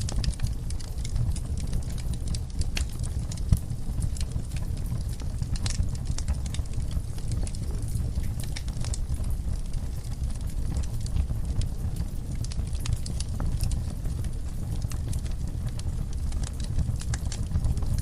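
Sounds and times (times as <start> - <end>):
fire flames rumbling: 0.0 - 18.0
logs crackling and popping: 0.0 - 18.0.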